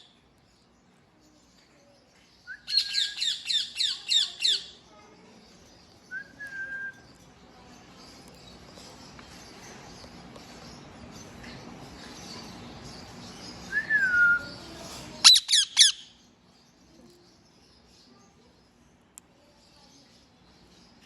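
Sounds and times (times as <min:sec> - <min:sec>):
parakeet squawks: 0:15.2 - 0:16.1.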